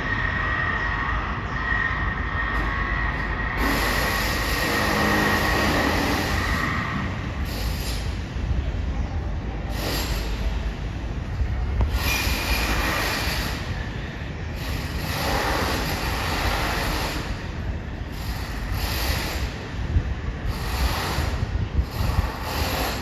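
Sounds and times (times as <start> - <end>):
steady low rumble: 0.0 - 23.0
high-pitched power tool noise: 3.6 - 8.0.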